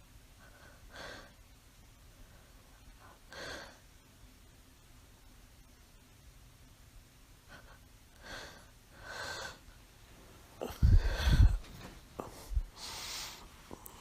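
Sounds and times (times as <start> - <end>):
breathy hiss: 0.3 - 4.0, 7.4 - 14.0
soft breathing: 0.4 - 3.9, 7.5 - 14.0.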